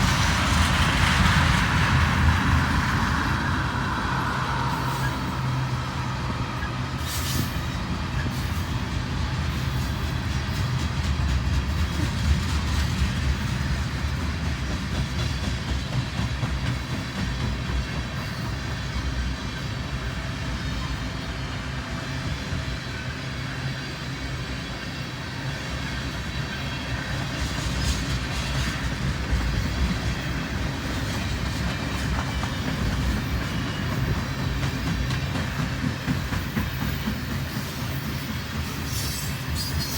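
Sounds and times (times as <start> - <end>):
freight train rolling past: 0.0 - 39.9
wheels clacking over rail joints: 25.9 - 39.9.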